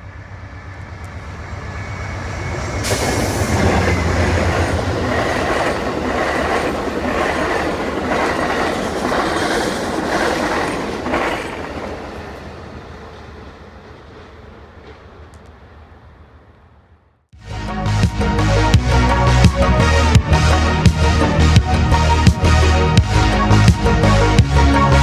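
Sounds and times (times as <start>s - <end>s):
train wheels clacking over rails: 0.7s - 13.4s.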